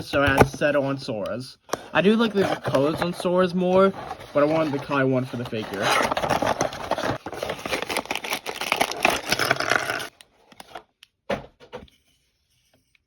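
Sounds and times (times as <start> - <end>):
plastic packaging crinkling: 5.5 - 10.1.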